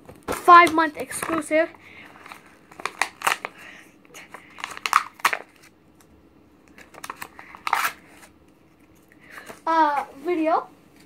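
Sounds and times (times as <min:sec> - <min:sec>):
packaging crinkling and rustling: 0:00.0 - 0:05.8, 0:06.7 - 0:08.4.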